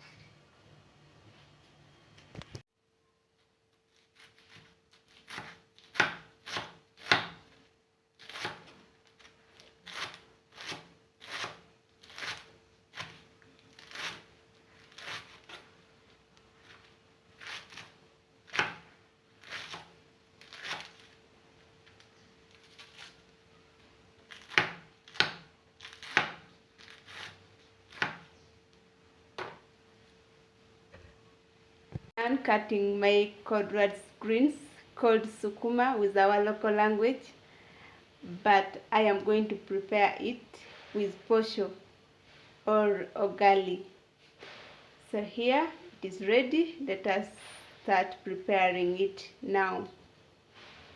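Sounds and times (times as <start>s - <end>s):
knife chopping greens on board: 4.2s - 7.5s, 8.2s - 8.8s, 9.9s - 14.3s, 18.5s - 19.9s, 24.4s - 28.3s.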